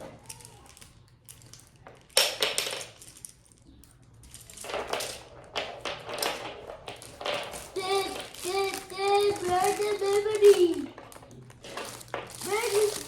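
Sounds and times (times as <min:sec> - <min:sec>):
plastic toy pieces clattering: 0:00.0 - 0:13.0.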